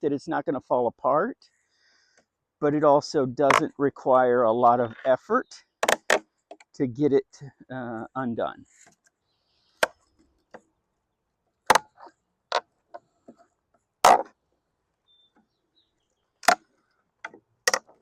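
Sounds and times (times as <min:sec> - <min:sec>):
wooden slats cracking: 0:05.8 - 0:06.3, 0:11.7 - 0:12.6, 0:14.0 - 0:14.4, 0:16.4 - 0:18.0.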